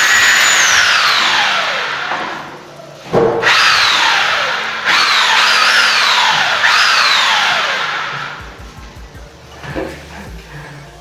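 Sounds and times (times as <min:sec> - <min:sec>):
electric power tool whining: 0:00.0 - 0:02.6, 0:03.4 - 0:08.6.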